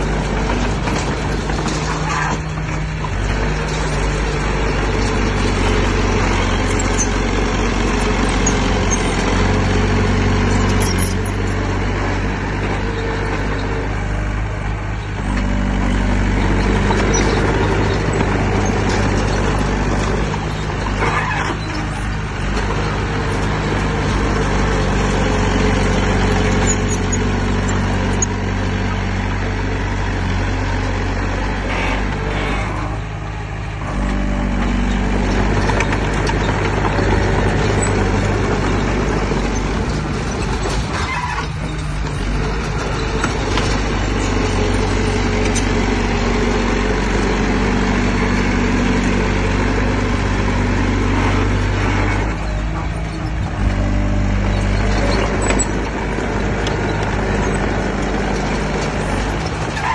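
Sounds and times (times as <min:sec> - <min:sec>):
heavy diesel engine running: 0:00.0 - 0:59.9.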